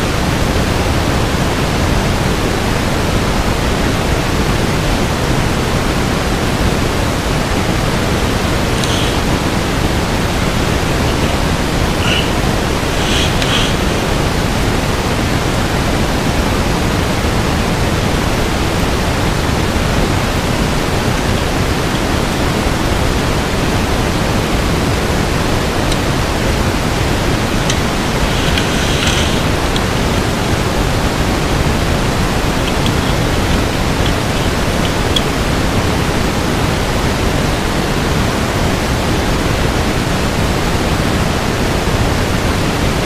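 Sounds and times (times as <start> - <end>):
loud rushing hiss: 6.5 - 36.5
faint light clicks: 27.6 - 30.3.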